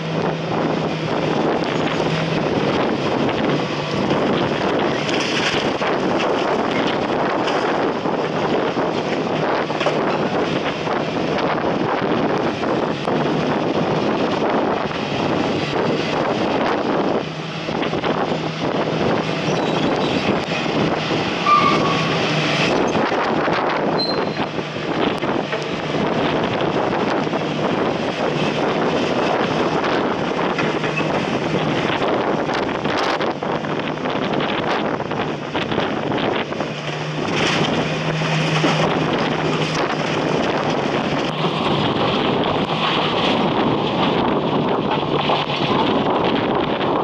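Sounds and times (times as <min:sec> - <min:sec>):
wind buffeting microphone: 0:00.0 - 0:47.0
heavy rain: 0:09.6 - 0:47.0.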